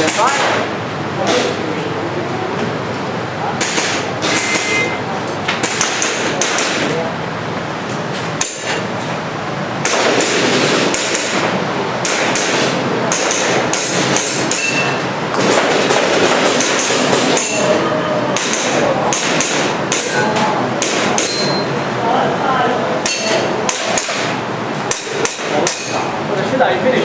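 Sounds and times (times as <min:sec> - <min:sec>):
airsoft pistol firing: 0:09.8 - 0:11.4.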